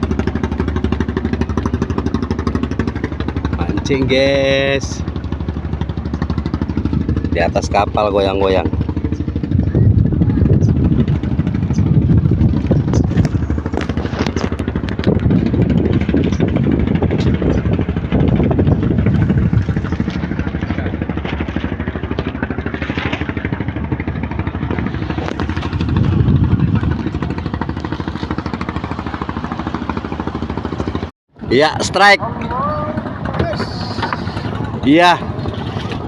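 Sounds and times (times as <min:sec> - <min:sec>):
small boat engine running: 0:00.0 - 0:36.0.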